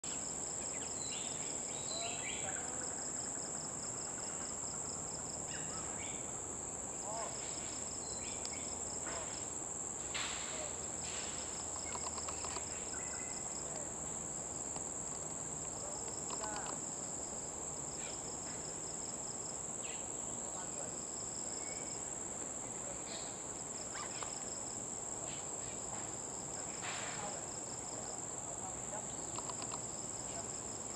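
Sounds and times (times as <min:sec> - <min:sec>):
insect chorus drone: 0:00.0 - 0:30.9
pulsed insect trills: 0:00.0 - 0:30.9
bird calls: 0:00.6 - 0:03.4, 0:11.7 - 0:13.5, 0:23.0 - 0:24.4.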